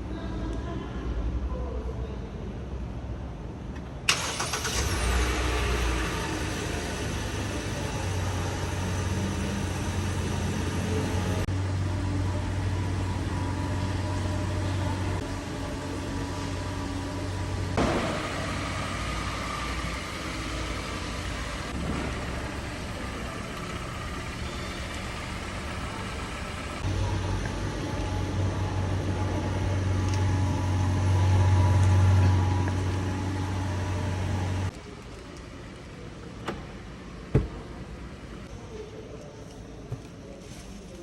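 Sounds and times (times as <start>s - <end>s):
car engine and exhaust running: 4.1s - 34.7s.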